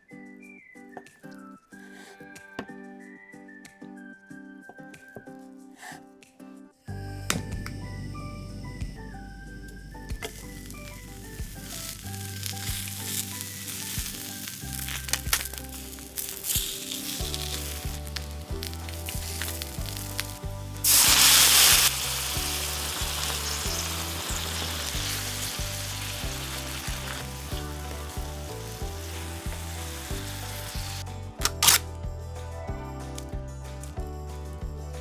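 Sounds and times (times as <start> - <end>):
background music: 0.0 - 35.0
food sizzling in a pan: 9.9 - 31.0.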